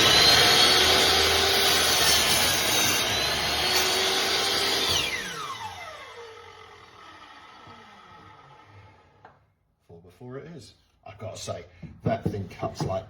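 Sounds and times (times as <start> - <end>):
saw blade spinning down: 0.0 - 9.2
miter saw whining: 0.0 - 9.3.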